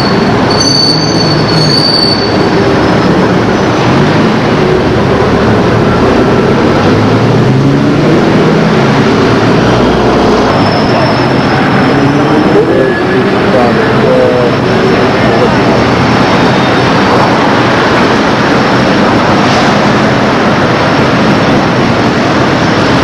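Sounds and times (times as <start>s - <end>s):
thin high squeal: 0.0s - 2.5s
vehicle rumble: 0.0s - 23.0s.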